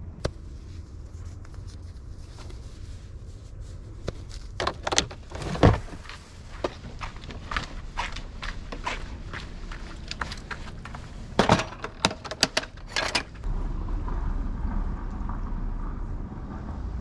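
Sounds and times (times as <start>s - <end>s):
steady low rumble: 0.0s - 17.0s
knocks and clatter of handling: 4.5s - 13.5s.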